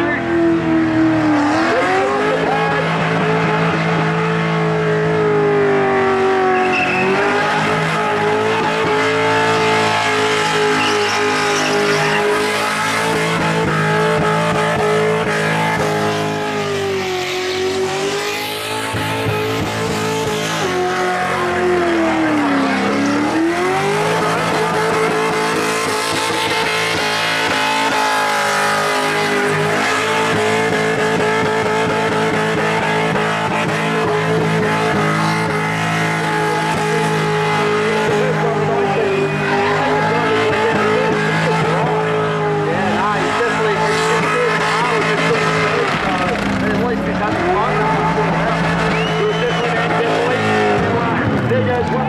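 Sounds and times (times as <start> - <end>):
car engine at high revs: 0.0 - 52.0
tyres squealing: 6.6 - 13.6.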